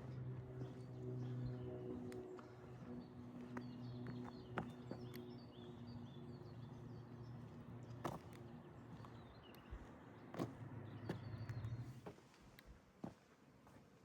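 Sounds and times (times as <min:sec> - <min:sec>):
small birds chirping: 0:02.3 - 0:12.1.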